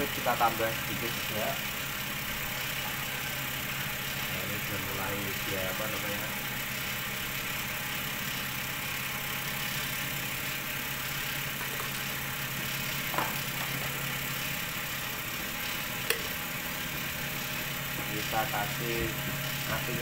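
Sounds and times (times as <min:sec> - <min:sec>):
cotton candy machine motor hum: 0:00.0 - 0:20.0
sharp click: 0:16.0 - 0:16.3.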